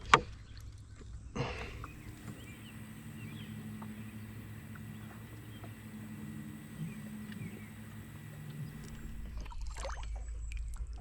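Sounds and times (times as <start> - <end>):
steady low hum: 1.5 - 9.5
faint bird chirps: 1.8 - 9.4.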